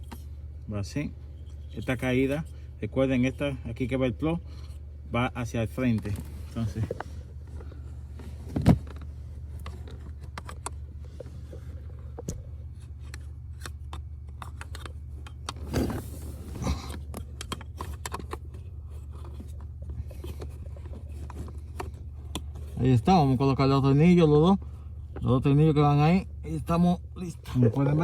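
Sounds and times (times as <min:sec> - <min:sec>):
clicks scrapes and knocks of handling: 0:05.8 - 0:22.9.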